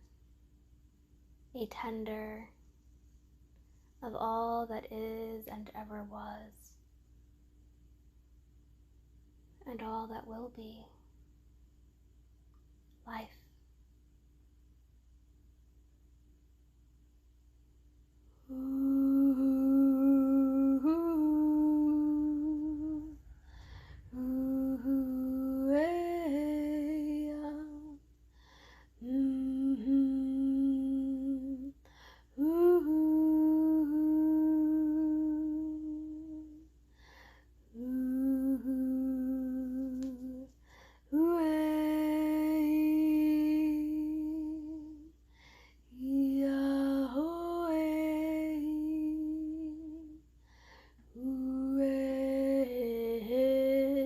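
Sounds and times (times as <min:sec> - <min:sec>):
woman humming a slow chant: 0:18.3 - 0:28.0, 0:29.0 - 0:36.7, 0:37.6 - 0:40.5, 0:41.1 - 0:45.2, 0:45.9 - 0:50.3, 0:51.0 - 0:54.0.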